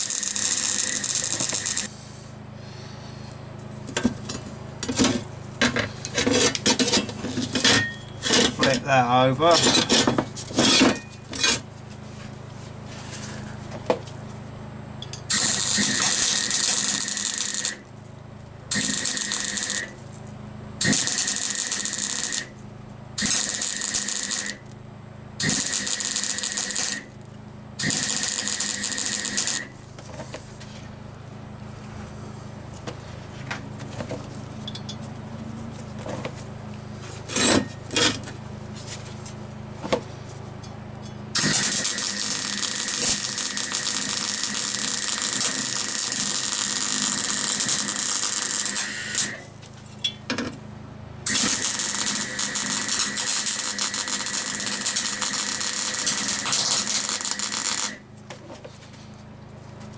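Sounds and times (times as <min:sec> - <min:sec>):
arc welding crackling hiss: 0:00.0 - 0:01.9, 0:15.3 - 0:17.9, 0:18.7 - 0:20.1, 0:20.8 - 0:22.6, 0:23.2 - 0:24.6, 0:25.4 - 0:27.2, 0:27.8 - 0:29.7, 0:41.4 - 0:49.4, 0:51.3 - 0:58.0
steady low hum: 0:00.0 - 0:23.2, 0:24.6 - 0:41.4.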